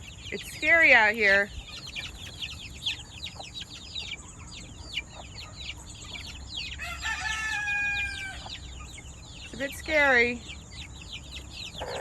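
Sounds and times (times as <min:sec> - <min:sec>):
chicks peeping: 0:00.0 - 0:12.0
rooster crowing: 0:06.8 - 0:08.5.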